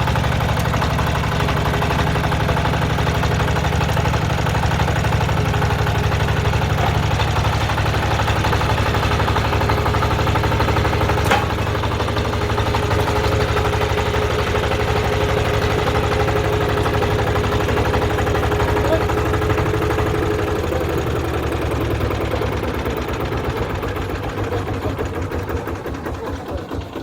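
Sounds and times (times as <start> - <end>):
diesel engine idling: 0.0 - 27.0
sharp engine knock: 0.0 - 27.0.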